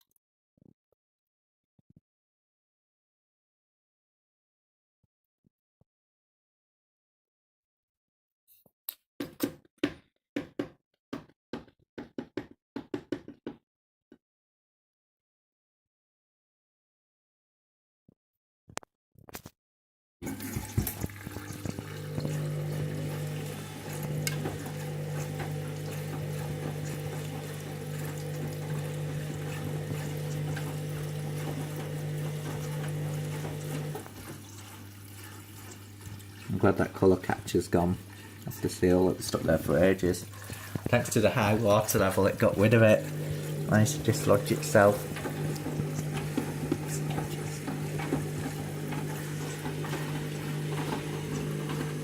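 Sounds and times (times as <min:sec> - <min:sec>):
water rushing into washing machine: 0:20.2 - 0:52.0.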